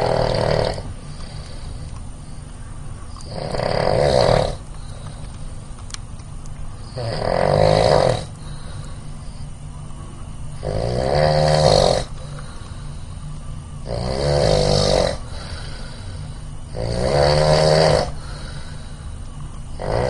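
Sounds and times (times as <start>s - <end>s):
person snoring: 0.0s - 1.8s, 3.3s - 4.6s, 7.0s - 8.7s, 10.6s - 12.4s, 13.8s - 19.0s, 19.8s - 20.0s.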